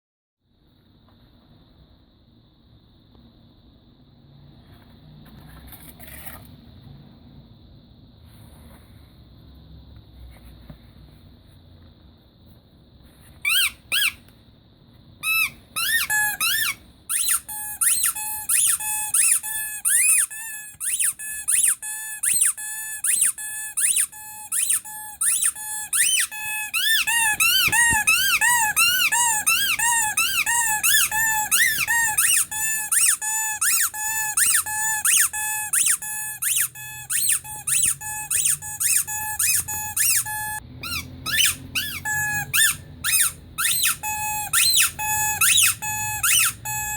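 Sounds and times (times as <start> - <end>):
squeaky toy squeaks: 13.4 - 14.2, 15.2 - 46.9.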